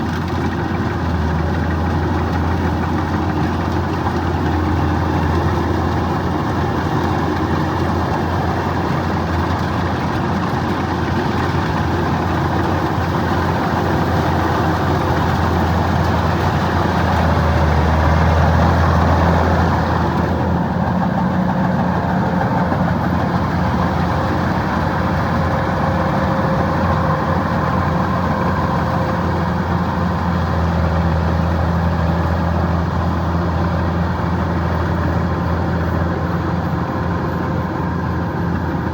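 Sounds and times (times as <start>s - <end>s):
combine harvester diesel drone: 0.0s - 38.9s.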